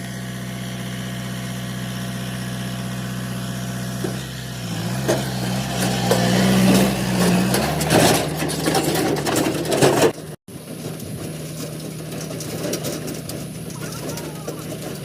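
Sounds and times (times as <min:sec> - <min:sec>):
diesel engine running: 0:00.0 - 0:15.0
clattering noise: 0:04.8 - 0:15.0.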